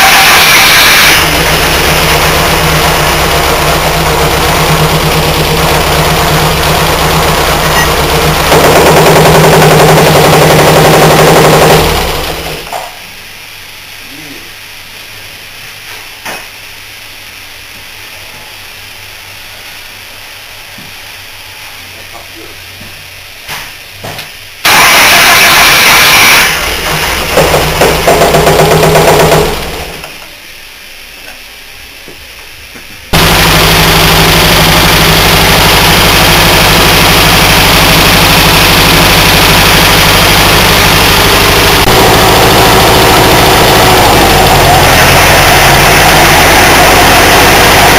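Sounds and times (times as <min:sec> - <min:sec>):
engine running with low hum: 0:00.6 - 0:12.8, 0:33.1 - 0:47.9
engine knocking: 0:01.0 - 0:12.7, 0:24.7 - 0:30.0, 0:33.2 - 0:47.9.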